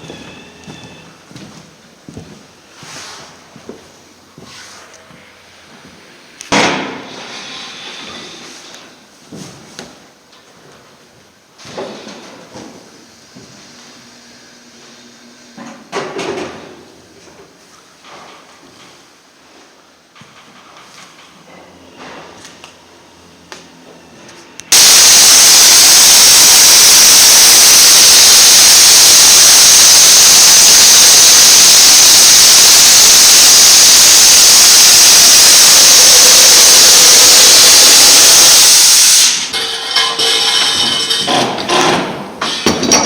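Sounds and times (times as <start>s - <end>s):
spraying machine air hiss: 24.7s - 39.5s.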